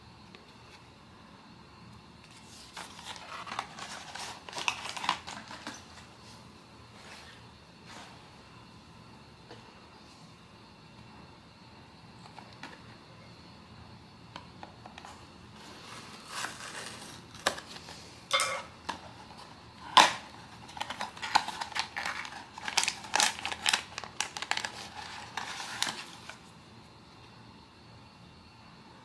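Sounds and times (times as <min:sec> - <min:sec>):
cardboard and plastic crinkling: 0:02.3 - 0:06.2, 0:15.0 - 0:18.0, 0:18.8 - 0:26.6.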